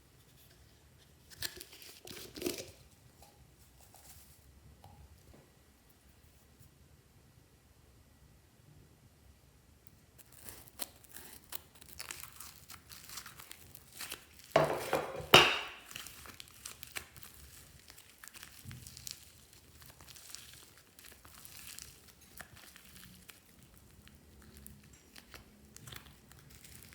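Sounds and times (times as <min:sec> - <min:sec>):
slime crinkling and crackling: 0:10.2 - 0:26.9.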